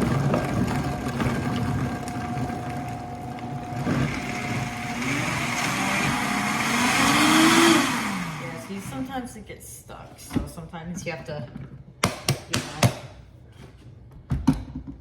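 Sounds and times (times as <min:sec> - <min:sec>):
blender motor running: 0:00.0 - 0:09.1.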